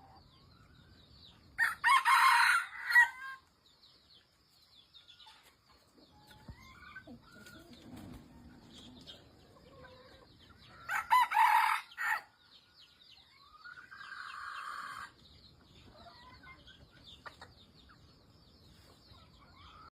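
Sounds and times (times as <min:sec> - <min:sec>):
rooster crowing: 0:01.6 - 0:03.4, 0:10.9 - 0:12.3.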